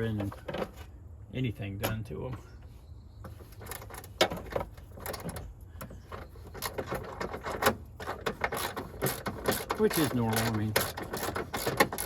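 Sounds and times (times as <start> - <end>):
metal bolts clinking and scraping: 3.4 - 12.0.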